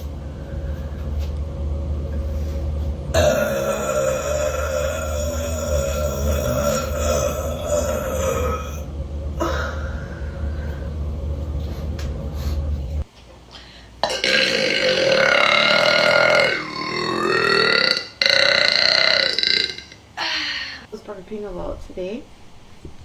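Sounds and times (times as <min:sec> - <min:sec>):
woman burping: 0:03.2 - 0:10.0, 0:14.0 - 0:20.5.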